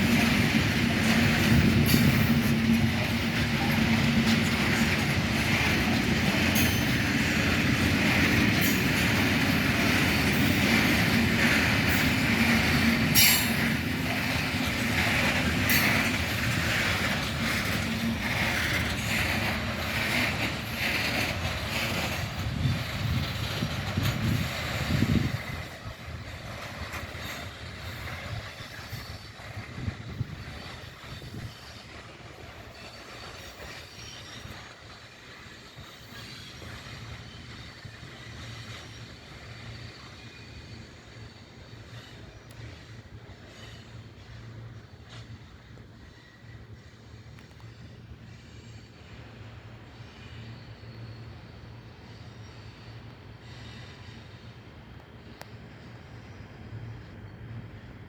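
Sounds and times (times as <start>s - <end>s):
wheels clicking over rail joints: 0.0s - 38.9s
train rumble: 0.0s - 58.0s
wheel squeal: 1.0s - 45.3s.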